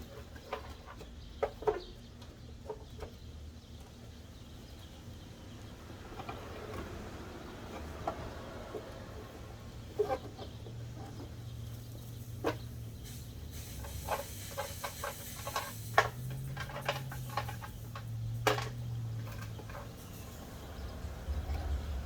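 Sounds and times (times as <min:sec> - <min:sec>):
plastic parts clicking and knocking: 0:12.4 - 0:20.0.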